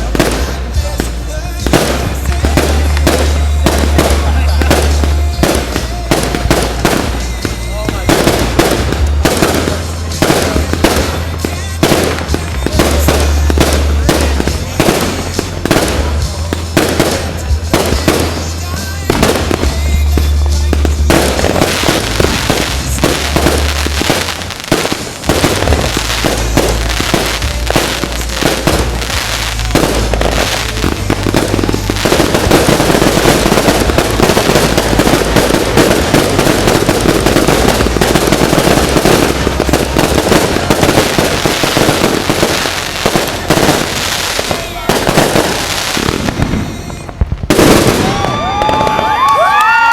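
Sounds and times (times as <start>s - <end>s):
fireworks bangs: 0.0s - 49.9s.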